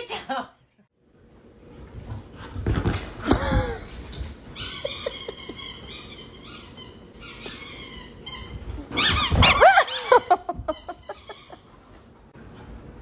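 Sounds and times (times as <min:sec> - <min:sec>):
dog whining yelps: 0:04.5 - 0:10.2.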